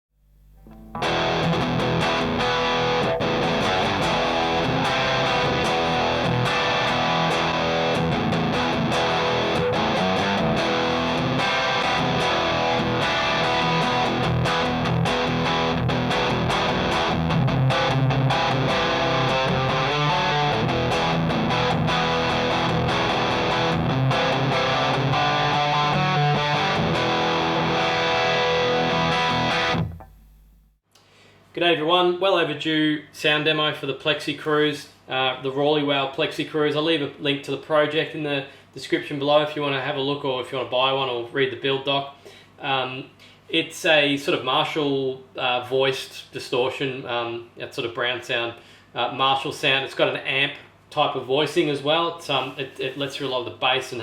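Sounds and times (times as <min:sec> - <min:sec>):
distorted electric guitar: 0:00.6 - 0:30.4.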